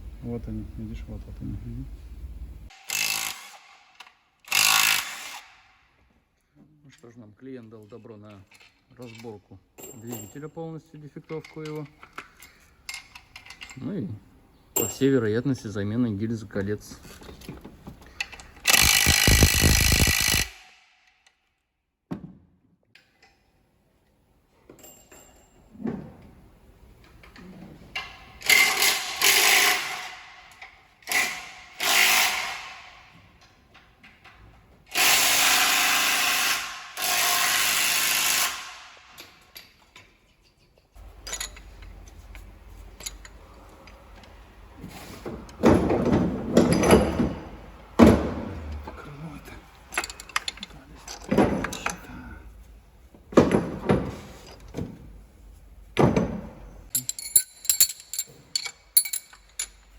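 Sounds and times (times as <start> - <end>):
tools knocking and rattling: 11.2 - 13.9, 39.5 - 43.4, 45.5 - 48.5, 49.9 - 52.0, 56.0 - 59.9
power tool running: 18.7 - 20.5.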